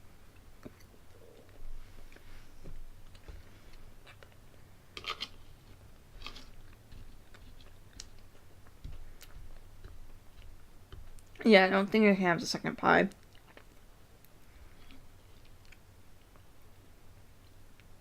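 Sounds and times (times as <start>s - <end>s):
chewing and mouth sounds: 3.0s - 11.4s, 13.1s - 18.0s.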